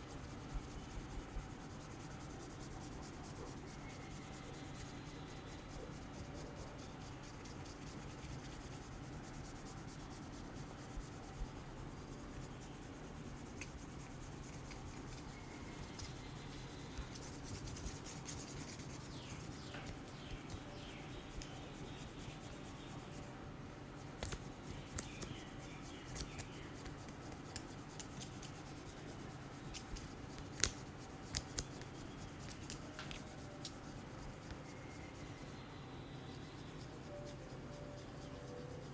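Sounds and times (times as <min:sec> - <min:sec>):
hands rubbing skin and hair: 0:26.1 - 0:35.2.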